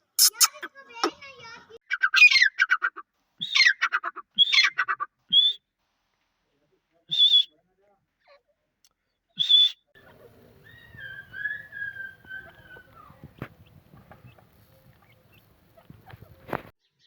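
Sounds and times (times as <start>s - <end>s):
francolins calling: 9.4s - 16.7s
low background noise: 10.0s - 16.7s
wavering whistled tone: 10.6s - 13.5s.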